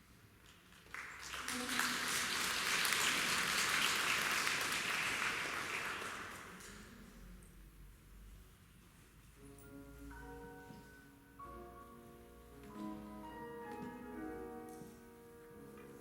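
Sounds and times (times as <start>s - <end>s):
audience applauding: 0.5s - 6.9s.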